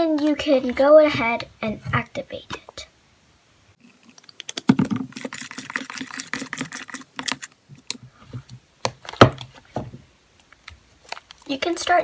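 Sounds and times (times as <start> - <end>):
tool stirring slime in a bowl: 4.2 - 8.5.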